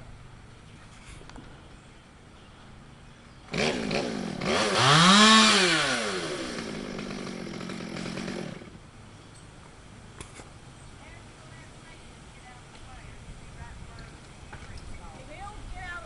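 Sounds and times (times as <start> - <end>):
chainsaw engine revving: 3.5 - 8.8.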